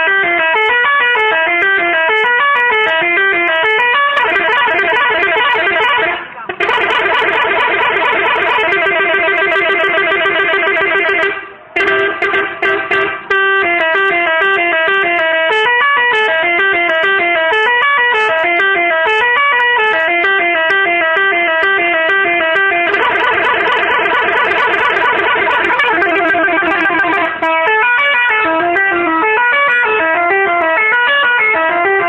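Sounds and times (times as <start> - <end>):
multi-tone musical horn: 0.0 - 32.0.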